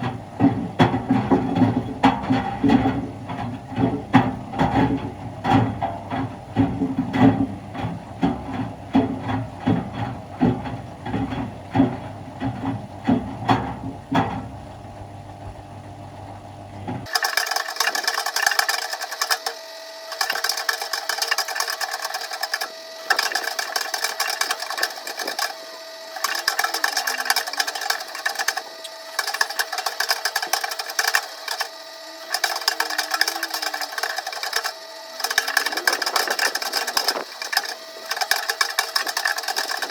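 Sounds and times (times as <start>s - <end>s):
high rattling with steady tone: 17.0s - 39.9s.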